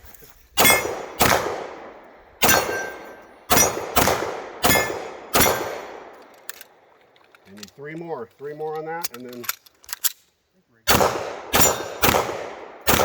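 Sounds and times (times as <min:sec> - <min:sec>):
steel plate ringing: 0:00.6 - 0:01.1, 0:02.4 - 0:03.9
pistol shots: 0:00.6 - 0:06.9, 0:10.9 - 0:13.0.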